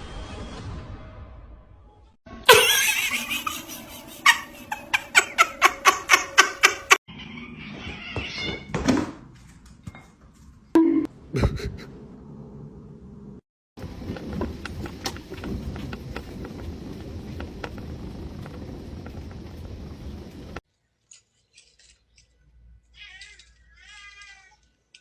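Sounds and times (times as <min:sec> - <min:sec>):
cat meowing: 0:22.9 - 0:24.6.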